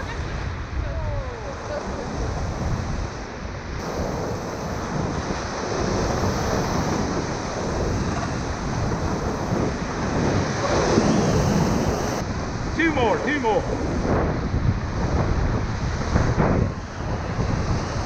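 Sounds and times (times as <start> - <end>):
wind buffeting microphone: 0.0 - 18.0
whitewater rushing and splashing: 3.8 - 14.3.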